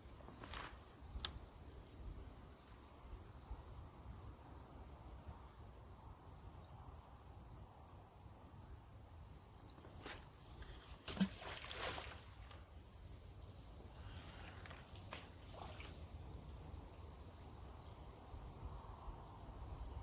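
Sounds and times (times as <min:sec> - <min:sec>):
wind rumble on microphone: 0:15.3 - 0:20.0.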